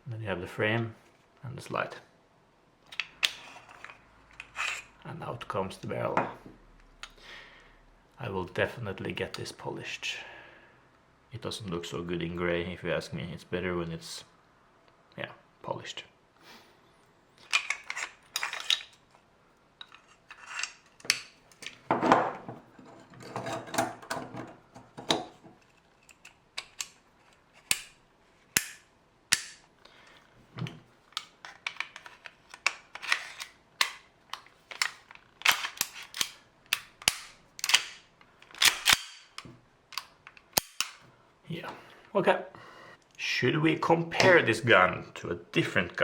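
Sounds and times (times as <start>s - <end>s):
metal parts scraping and rubbing: 3.2s - 5.0s, 17.4s - 19.2s, 19.8s - 21.8s, 22.5s - 27.7s, 31.2s - 33.6s
metallic clicks of air pistol: 33.8s - 41.0s.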